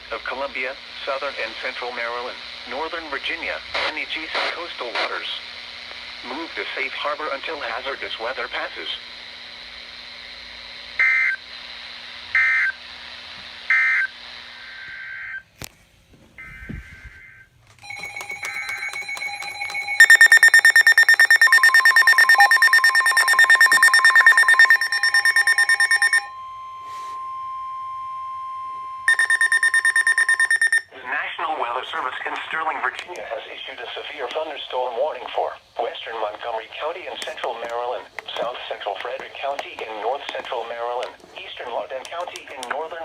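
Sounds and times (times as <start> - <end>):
rapid electronic alarm beeping: 12.4 - 12.8, 16.4 - 30.9
screeching digital data bursts: 20.0 - 26.3, 29.1 - 30.8.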